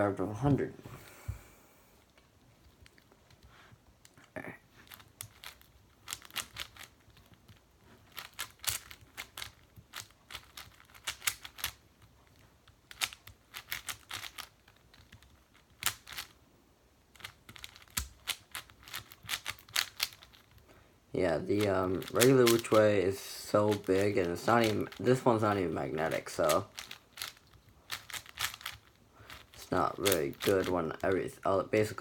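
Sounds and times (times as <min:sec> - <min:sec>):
plastic puzzle cube clicking: 0:04.8 - 0:16.4, 0:17.1 - 0:20.6, 0:21.6 - 0:22.8, 0:23.7 - 0:25.2, 0:26.0 - 0:31.9.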